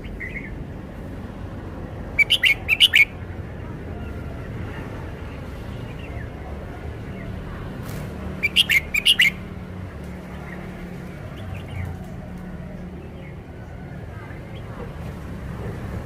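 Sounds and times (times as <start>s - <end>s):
bulbul singing: 2.0s - 3.3s, 8.3s - 9.7s.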